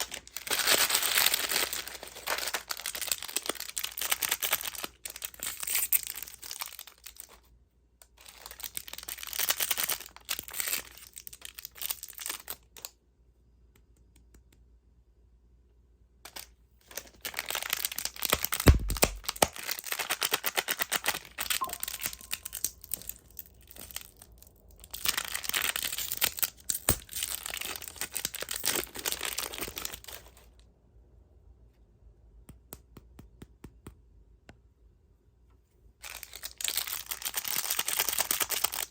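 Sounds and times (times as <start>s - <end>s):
plastic wrappers crinkling: 0.0s - 7.5s, 8.1s - 12.9s, 16.3s - 30.6s, 36.0s - 38.9s.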